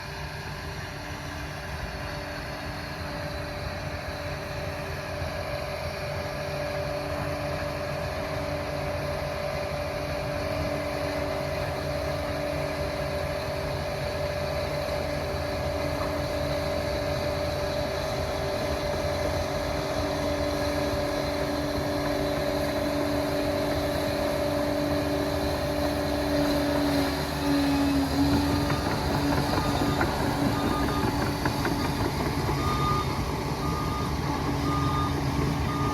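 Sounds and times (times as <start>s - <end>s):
dozer diesel engine whining: 0.0s - 35.9s
reversing alarm beeping: 27.5s - 35.9s.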